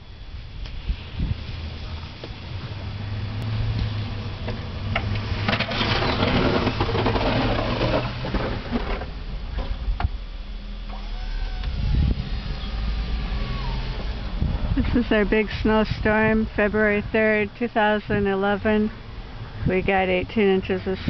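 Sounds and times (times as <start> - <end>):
engine humming: 0.0 - 21.0.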